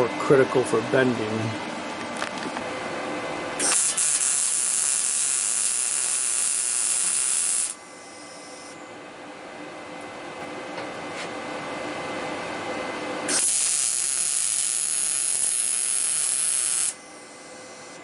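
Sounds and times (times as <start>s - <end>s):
welding arc sizzling: 3.6s - 8.7s, 13.3s - 18.0s.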